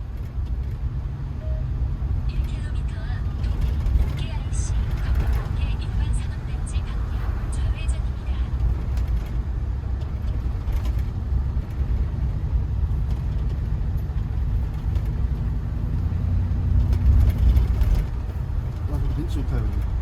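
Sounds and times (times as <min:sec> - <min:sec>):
faint engine drone: 0:00.0 - 0:09.4
car rumble inside cabin: 0:00.0 - 0:20.0.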